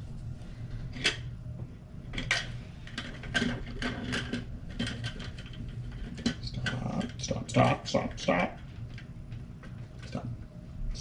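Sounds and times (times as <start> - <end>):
steady low hum: 0.0 - 11.0
small parts clicking and rattling: 2.2 - 7.3.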